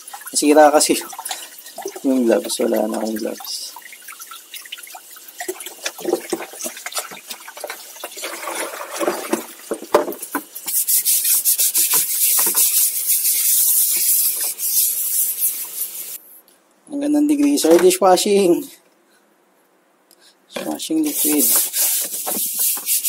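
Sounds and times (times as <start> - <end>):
hand scrubbing greasy metal part: 10.2 - 16.2, 20.9 - 23.0.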